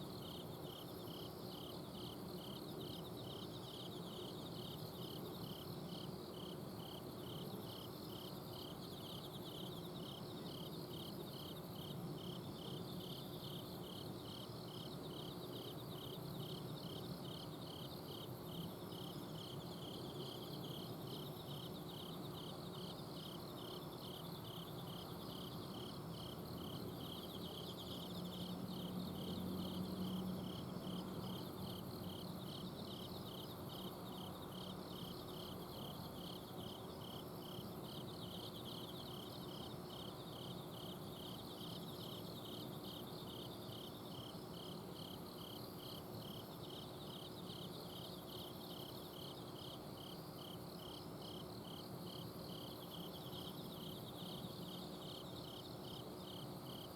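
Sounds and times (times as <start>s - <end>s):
cricket chirping: 0.0s - 56.9s
high steady insect ring: 0.0s - 56.9s.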